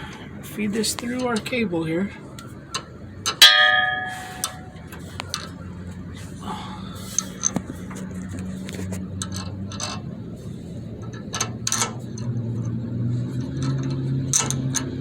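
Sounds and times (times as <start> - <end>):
light metal clicks and scraping: 2.4 - 5.6, 7.1 - 15.0.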